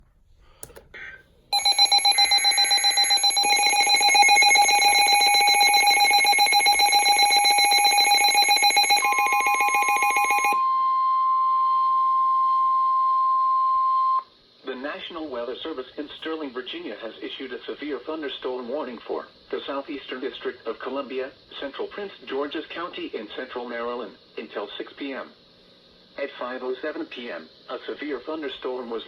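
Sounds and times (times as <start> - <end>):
pulsing electronic alarm tones: 1.6 - 11.4
steady single-pitch tone: 1.6 - 14.2.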